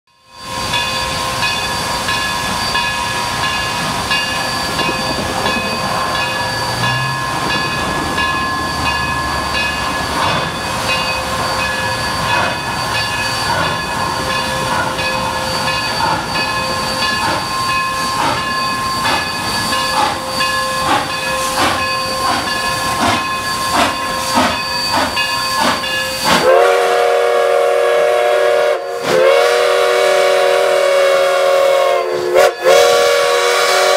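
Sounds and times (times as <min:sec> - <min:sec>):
steam hiss: 0:00.2 - 0:33.9
steam locomotive exhaust chuffs: 0:00.2 - 0:33.9
steam whistle: 0:24.2 - 0:33.9.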